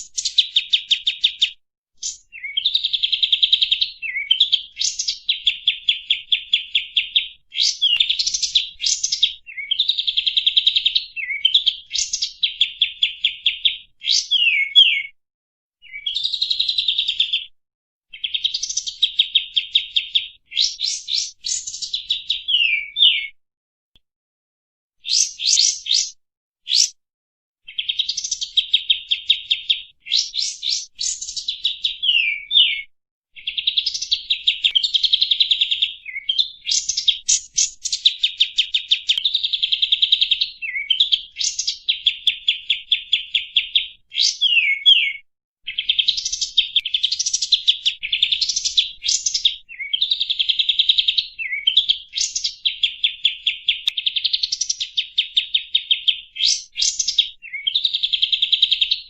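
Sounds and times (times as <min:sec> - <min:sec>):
bulbul singing: 0:00.0 - 0:15.0, 0:25.0 - 0:27.0.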